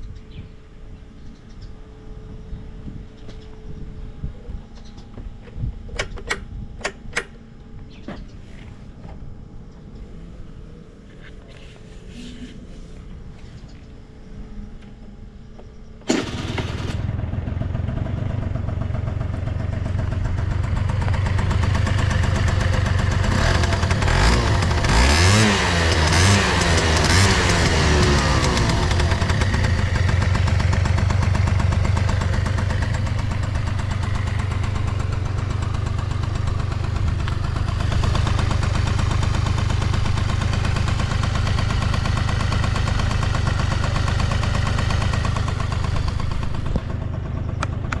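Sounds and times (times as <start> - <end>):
scooter engine running and revving: 16.1 - 48.0.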